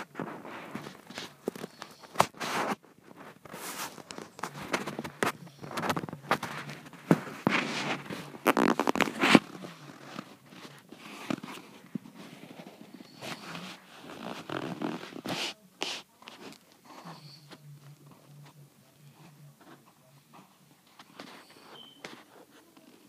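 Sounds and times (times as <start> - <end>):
dog snoring: 16.9 - 17.6.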